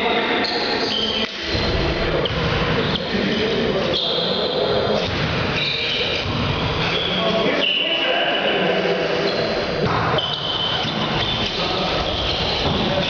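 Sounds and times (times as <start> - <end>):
players' voices: 0.0 - 13.0
volleyball being hit and bouncing: 9.8 - 13.0.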